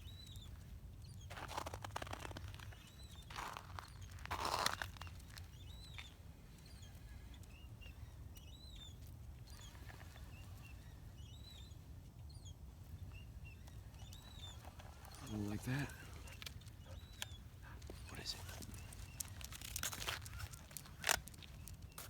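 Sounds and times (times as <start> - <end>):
crunching rustle: 1.0 - 6.2, 14.0 - 22.0.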